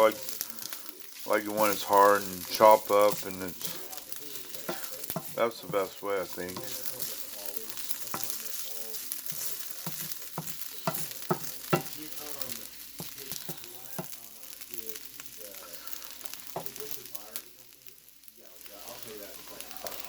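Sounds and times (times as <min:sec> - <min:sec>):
garlic sizzling in a frying pan: 0:00.0 - 0:20.0
utensil knocking against pan: 0:09.8 - 0:12.0.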